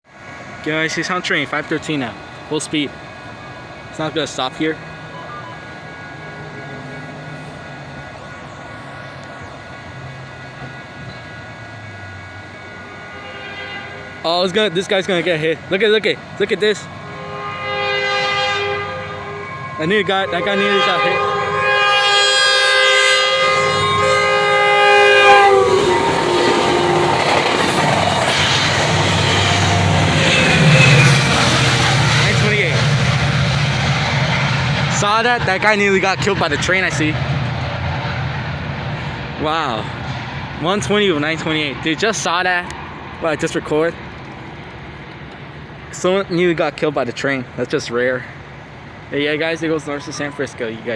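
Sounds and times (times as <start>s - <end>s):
train cars rumbling on rails: 0.0s - 50.3s
diesel locomotive engine droning: 0.0s - 50.9s
train horn chord: 4.0s - 15.2s, 16.7s - 27.6s.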